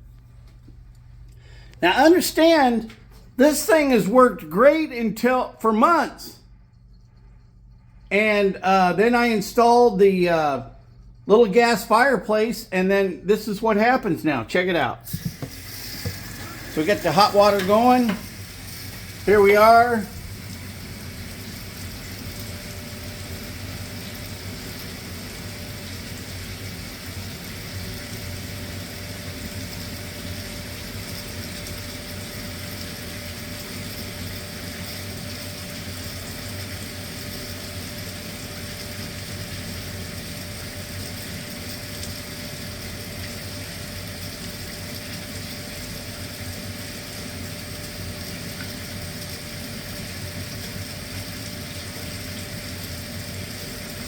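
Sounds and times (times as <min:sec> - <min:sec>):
water heater humming and hissing: 0:00.0 - 0:54.0.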